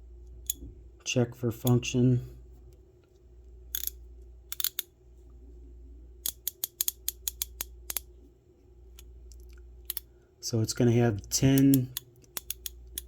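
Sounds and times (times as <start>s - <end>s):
ratchet clicking: 3.7s - 4.9s, 6.2s - 8.0s, 11.6s - 13.0s.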